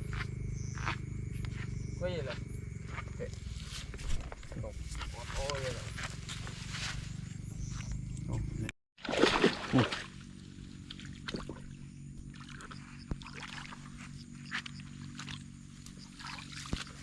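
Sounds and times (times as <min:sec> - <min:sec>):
steady low hum: 0:00.0 - 0:17.0
water splashing and sloshing: 0:09.0 - 0:17.0.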